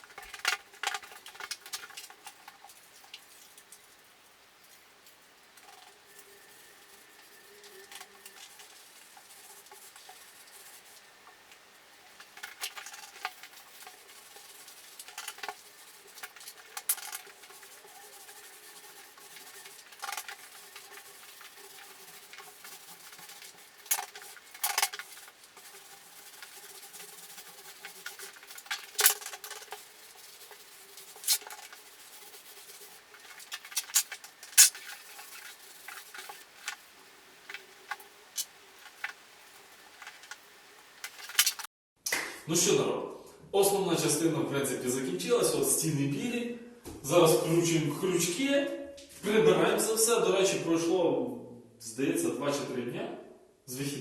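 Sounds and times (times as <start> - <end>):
paint roller rolling on wall: 0.0 - 41.7.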